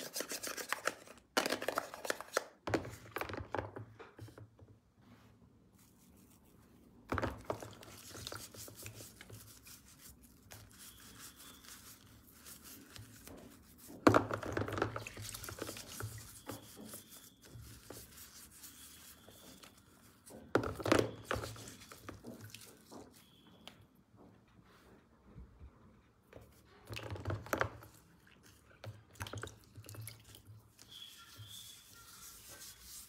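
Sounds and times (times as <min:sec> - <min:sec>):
rubbing and scraping: 0:07.4 - 0:23.4, 0:30.8 - 0:33.0.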